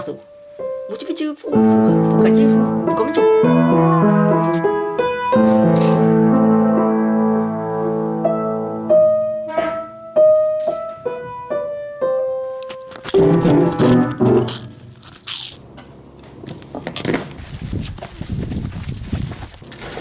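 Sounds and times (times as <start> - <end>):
piano music: 0.0 - 15.5.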